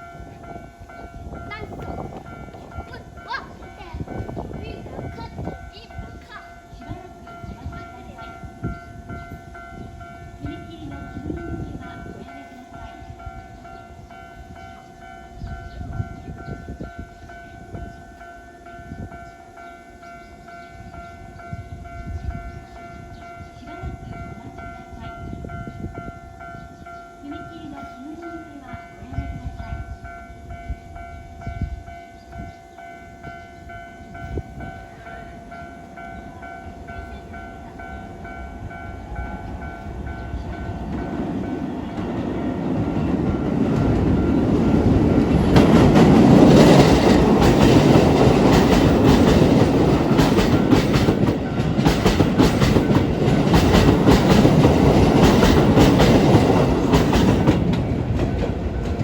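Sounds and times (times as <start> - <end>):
electric train passing: 0.0 - 59.0
train wheels clattering on rail joints: 35.4 - 59.0.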